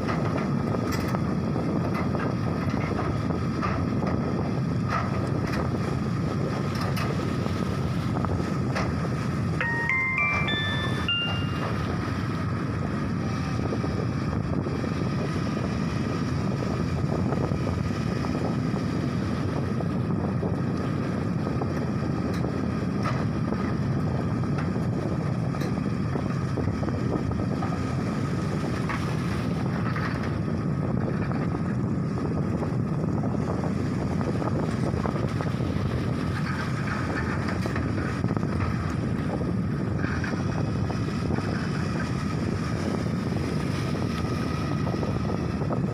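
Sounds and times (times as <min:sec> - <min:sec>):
diesel engine rumbling: 0:00.0 - 0:45.9.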